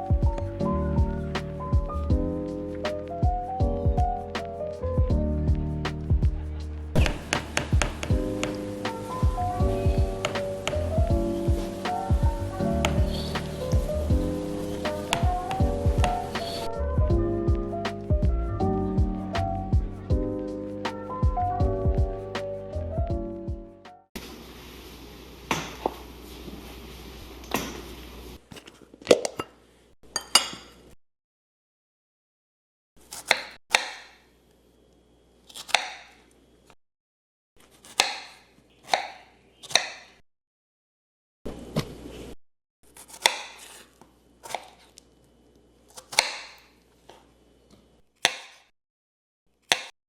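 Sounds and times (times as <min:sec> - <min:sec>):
knife chopping on cutting board: 0:07.0 - 0:12.0, 0:37.8 - 0:40.0, 0:43.0 - 0:43.8
steady hiss: 0:07.0 - 0:16.7, 0:24.2 - 0:28.4.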